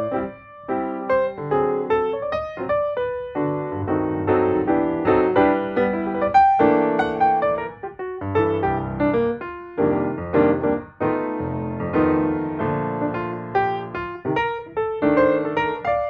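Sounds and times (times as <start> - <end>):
piano music: 0.0 - 16.0.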